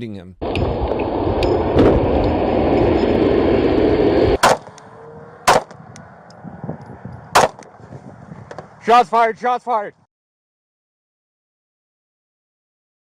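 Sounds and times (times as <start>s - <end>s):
loud rushing noise: 0.4s - 8.9s
pistol shots: 4.4s - 4.8s, 5.5s - 5.8s, 7.3s - 7.7s.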